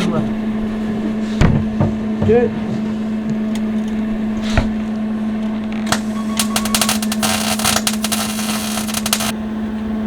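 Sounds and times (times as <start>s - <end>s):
steady low hum: 0.0s - 9.4s
welder arc crackling and spitting: 5.5s - 9.4s.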